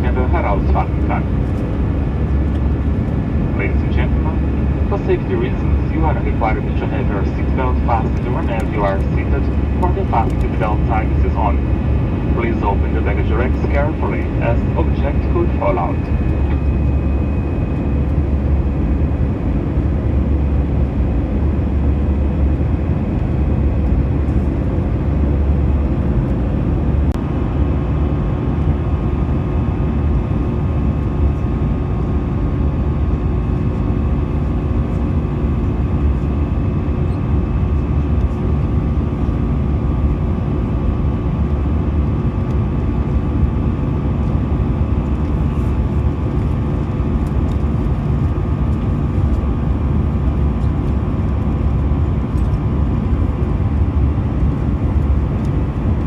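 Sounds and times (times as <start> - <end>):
higher hum: 0.0 - 20.8
airplane cabin engine rumble: 0.0 - 56.0
faint steady hums: 0.0 - 56.0.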